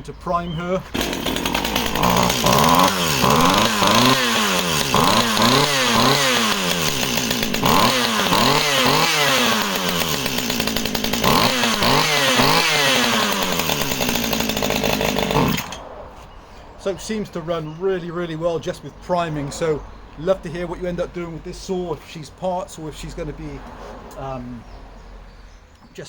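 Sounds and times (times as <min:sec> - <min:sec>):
chainsaw revving: 0:00.8 - 0:15.8.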